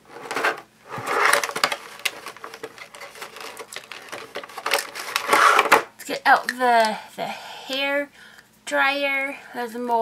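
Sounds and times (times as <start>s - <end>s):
plastic toy pieces clicking and rattling: 1.3s - 5.6s.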